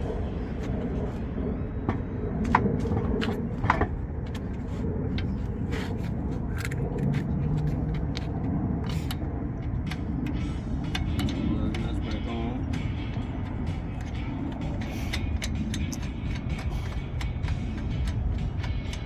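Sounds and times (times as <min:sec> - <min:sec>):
low rumble: 0:00.0 - 0:19.0
metallic clicks and knocks: 0:06.6 - 0:19.0.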